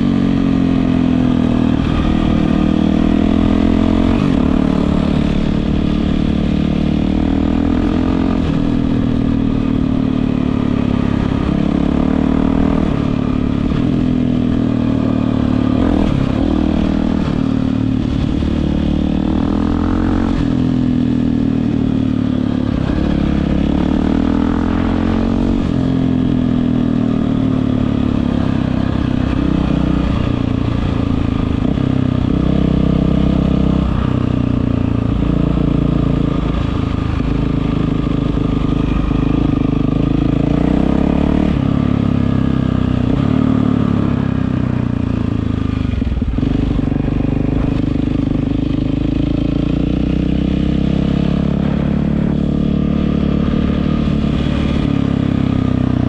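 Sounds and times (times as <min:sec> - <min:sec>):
dirt bike engine revving: 0:37.4 - 0:42.2.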